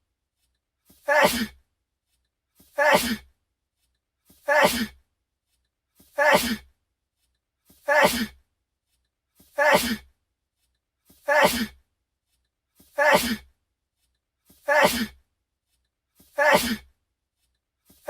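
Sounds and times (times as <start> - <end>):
man sneezing: 1.0 - 1.6, 2.8 - 3.2, 4.5 - 5.0, 6.2 - 6.6, 7.9 - 8.4, 9.6 - 10.0, 11.3 - 11.8, 13.0 - 13.4, 14.7 - 15.2, 16.4 - 16.9.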